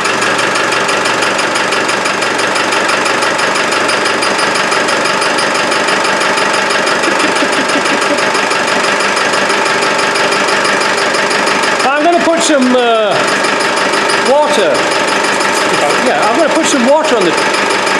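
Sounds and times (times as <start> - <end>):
fast chirping tick: 6.5 - 17.9.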